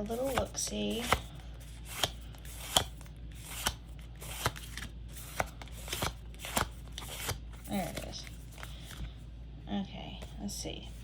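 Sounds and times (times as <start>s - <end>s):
cards snapping: 1.8s - 9.0s.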